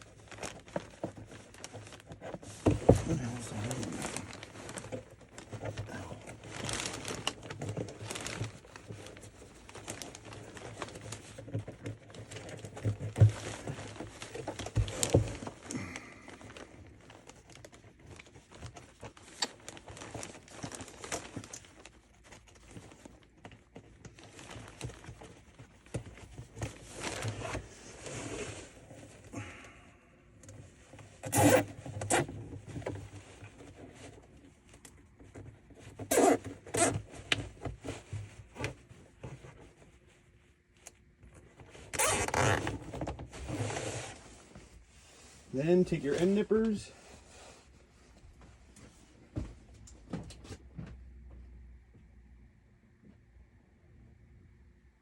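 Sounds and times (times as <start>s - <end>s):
plastic can scraping and knocking: 0.1s - 15.7s.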